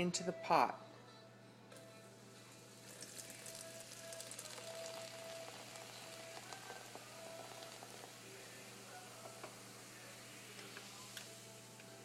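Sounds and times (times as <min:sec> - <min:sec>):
quiet background music: 0:00.0 - 0:12.0
soda fizzing: 0:02.6 - 0:11.8.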